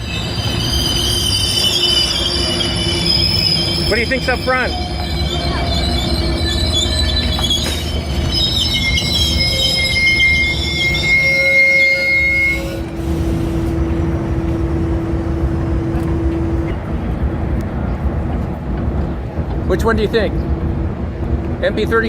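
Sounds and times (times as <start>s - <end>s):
steel wheels squealing: 0.0s - 13.7s
railroad cars rumbling past: 0.0s - 22.0s.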